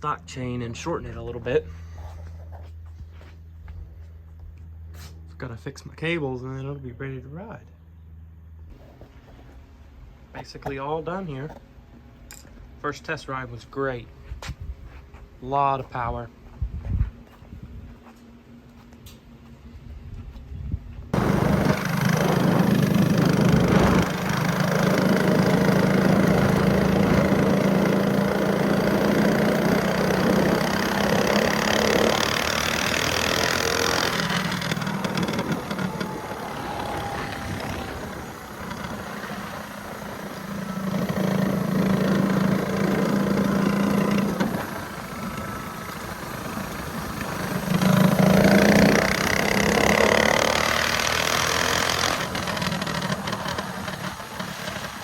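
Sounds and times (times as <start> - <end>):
mini bike engine revving: 21.2 - 55.0.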